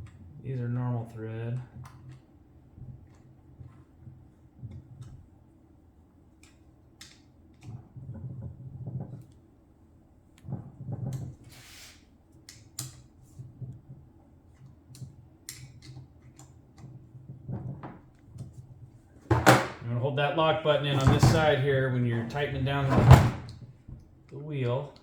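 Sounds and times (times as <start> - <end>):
low rubbing handling noise: 20.3 - 23.5.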